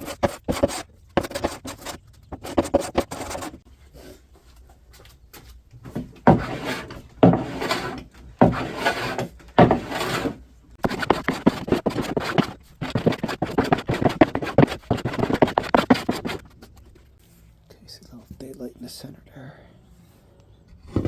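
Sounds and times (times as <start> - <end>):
hand plane shaving wood: 6.3 - 16.5.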